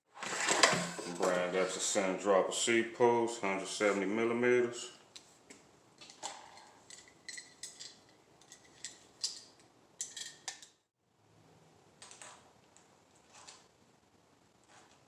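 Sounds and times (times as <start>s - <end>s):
bike parts clicking and rattling: 6.0s - 10.8s.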